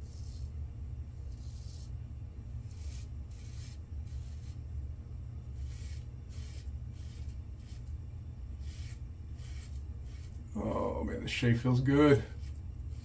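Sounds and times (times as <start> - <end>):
steady low hum: 0.0 - 13.0
razor scraping stubble: 1.2 - 2.0, 2.6 - 4.7, 5.5 - 8.0, 8.6 - 11.0, 11.6 - 13.0.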